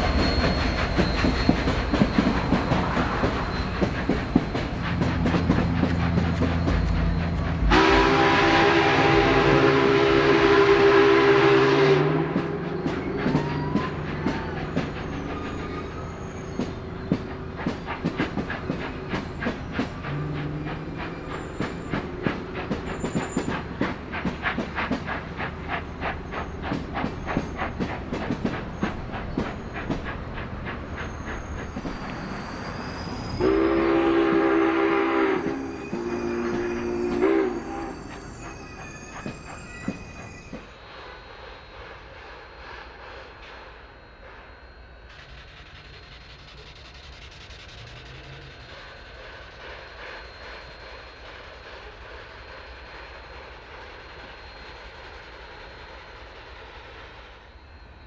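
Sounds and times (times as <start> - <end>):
steam locomotive whistle: 0.0 - 30.2, 31.0 - 40.7
train wheels clattering: 0.0 - 44.5.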